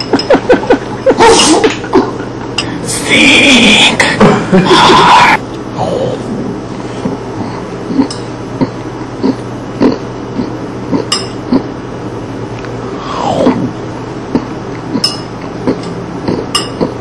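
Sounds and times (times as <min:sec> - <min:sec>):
falling vocal sweep: 0:02.8 - 0:06.5
man making wet chewing noises: 0:07.0 - 0:11.7, 0:14.3 - 0:17.0.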